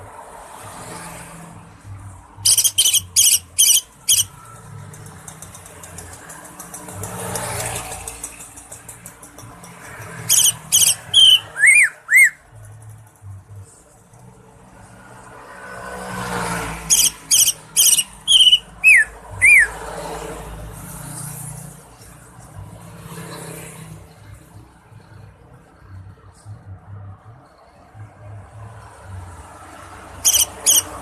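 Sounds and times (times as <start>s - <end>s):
bird whistling sharp notes: 2.4s - 4.4s, 10.3s - 12.4s, 16.9s - 19.8s.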